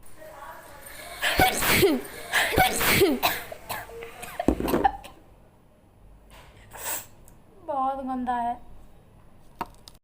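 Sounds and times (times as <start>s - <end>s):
woman sneezing: 1.2s - 3.9s.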